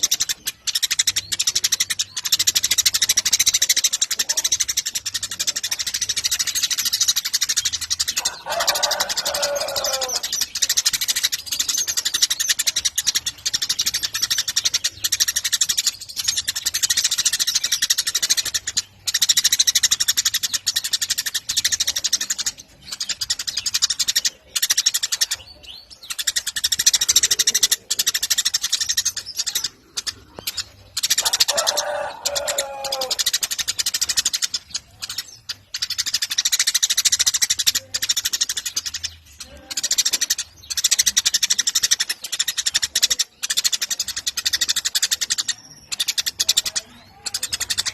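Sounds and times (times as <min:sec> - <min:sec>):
sparrows chirping rapidly: 0:00.0 - 0:47.9.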